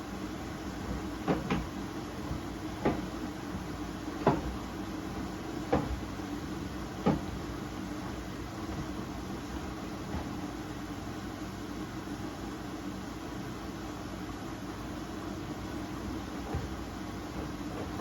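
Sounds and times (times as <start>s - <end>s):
washing machine motor humming: 0.0s - 18.0s
washing machine drum thumps: 0.6s - 10.5s, 16.0s - 18.0s.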